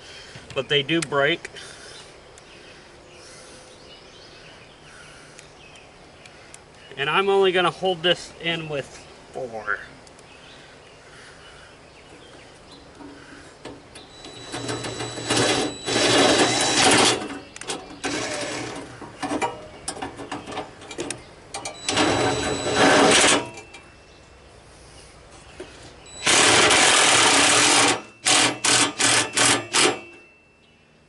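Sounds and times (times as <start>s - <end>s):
cordless drill driving a screw: 14.2s - 17.4s, 18.0s - 18.9s, 21.7s - 23.6s, 26.1s - 30.0s.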